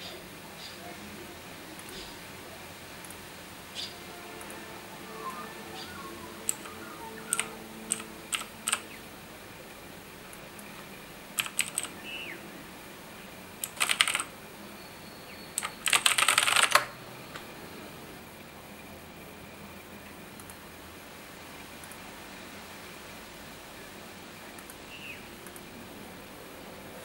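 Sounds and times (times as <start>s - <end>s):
mechanical keyboard keystrokes: 7.3s - 8.8s, 11.4s - 12.0s, 13.6s - 14.3s, 15.6s - 16.9s.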